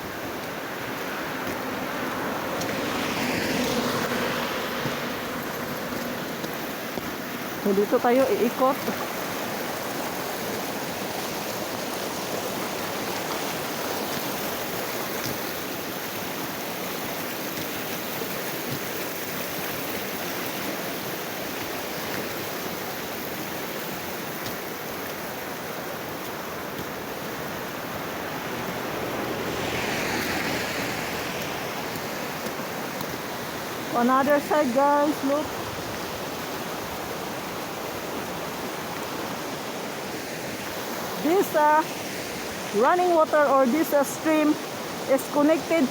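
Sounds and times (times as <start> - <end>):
stream rushing over its bed: 0.0 - 45.9.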